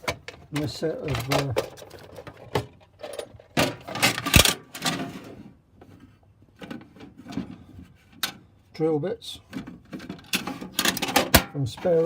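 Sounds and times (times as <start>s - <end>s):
tools rattling in metal drawer: 0.0s - 5.4s, 9.5s - 12.0s.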